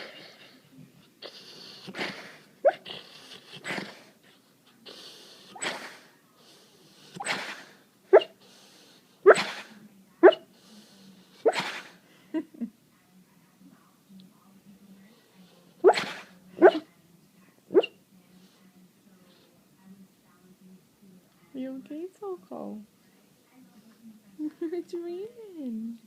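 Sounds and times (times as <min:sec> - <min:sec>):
sharp pitched snort: 0:07.1 - 0:08.4, 0:09.3 - 0:10.4, 0:11.5 - 0:12.0, 0:15.9 - 0:16.8.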